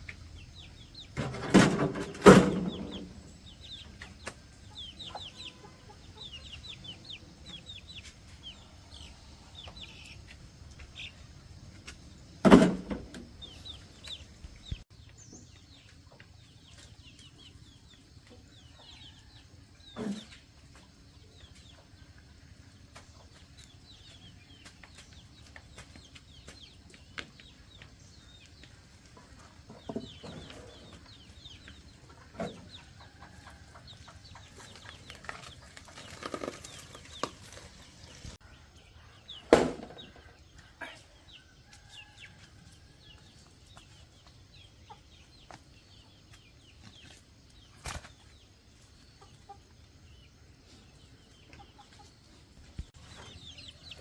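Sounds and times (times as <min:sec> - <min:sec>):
chickens clucking: 0:00.0 - 0:54.0
knocks and clatters: 0:01.2 - 0:03.2.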